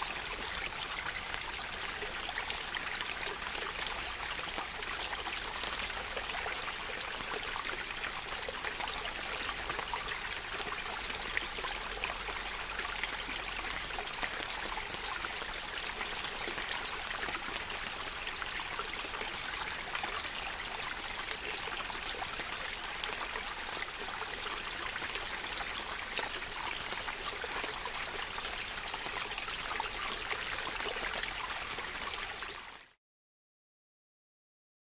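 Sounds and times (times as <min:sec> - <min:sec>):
stream flowing: 0:00.0 - 0:32.8.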